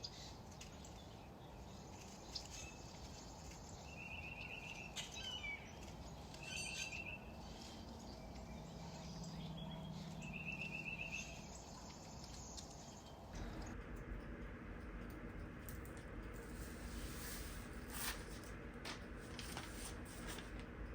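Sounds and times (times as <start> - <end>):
higher bird chirps: 2.3 - 13.1
bird pulsed trill: 2.3 - 13.2
low hum: 2.7 - 20.9.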